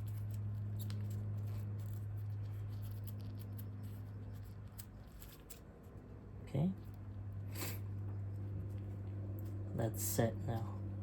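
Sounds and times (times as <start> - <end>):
tape clicking and rustling: 0.0 - 5.9
low hum: 0.0 - 11.0.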